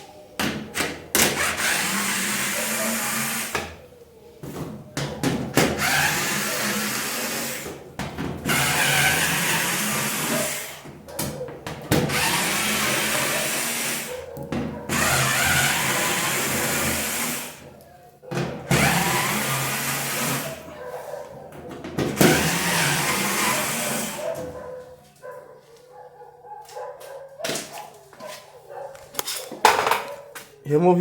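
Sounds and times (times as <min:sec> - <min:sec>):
cordless screwdriver running: 0:14.9 - 0:16.7.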